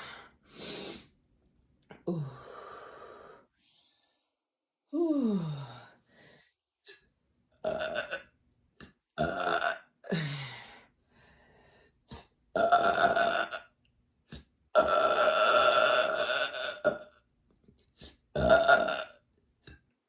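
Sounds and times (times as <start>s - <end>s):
woman belching: 7.6s - 8.3s, 9.2s - 9.8s, 12.6s - 13.7s, 14.8s - 17.2s, 18.4s - 19.2s.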